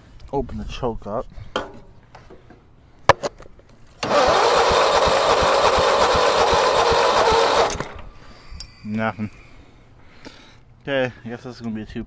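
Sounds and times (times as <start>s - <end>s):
engine cranking on electric starter: 4.0s - 8.1s.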